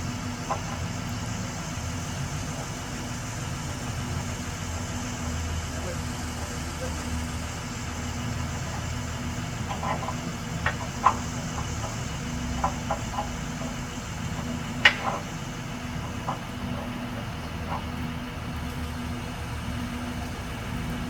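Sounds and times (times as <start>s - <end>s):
engine idling: 0.0s - 21.0s
sharp knocks and clacks: 9.6s - 18.0s.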